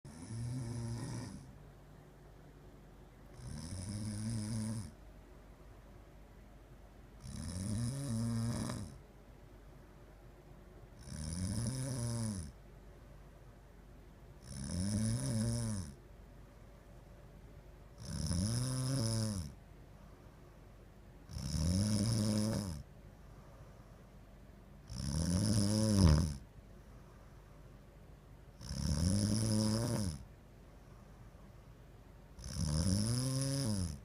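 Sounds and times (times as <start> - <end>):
person snoring: 0.1 - 1.5, 3.3 - 5.0, 7.2 - 9.0, 11.0 - 12.6, 14.4 - 16.0, 18.0 - 19.6, 21.3 - 22.9, 24.8 - 26.4, 28.6 - 30.2, 32.4 - 34.0.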